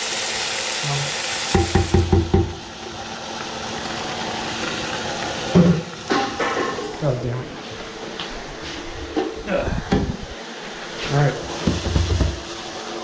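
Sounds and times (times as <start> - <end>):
peas sizzling in hot oil: 0.0 - 7.3, 10.8 - 13.0
utensil knocking on pan: 1.5 - 2.6, 11.6 - 12.4.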